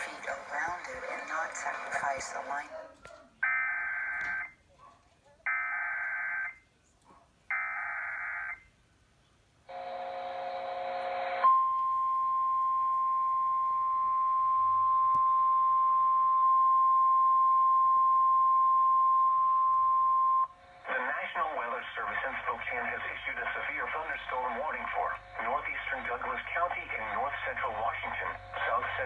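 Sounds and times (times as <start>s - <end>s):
steady warning alarm tone: 9.7s - 20.9s, 22.8s - 29.0s.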